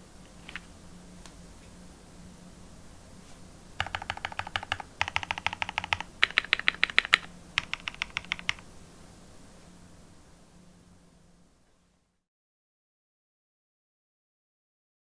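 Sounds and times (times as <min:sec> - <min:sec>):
mechanical keyboard typing: 0:03.8 - 0:08.7.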